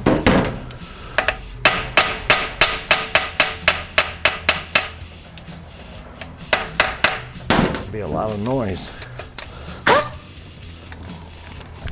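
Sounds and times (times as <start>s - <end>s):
hammer striking metal: 1.2s - 5.1s, 6.2s - 7.8s, 9.9s - 10.3s.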